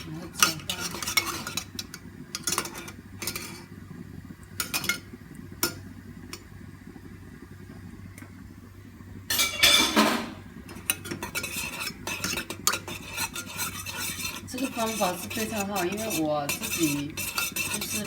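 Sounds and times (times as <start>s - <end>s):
spoon scraping cup: 0.0s - 3.7s, 10.7s - 18.0s
teaspoon stirring in cup: 0.0s - 3.7s, 4.6s - 5.0s, 10.7s - 18.0s.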